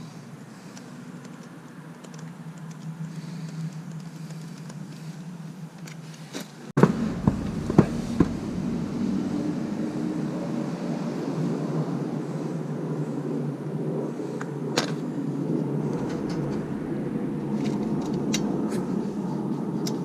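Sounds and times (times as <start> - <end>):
steady low hum: 6.8 - 12.4, 15.0 - 20.0.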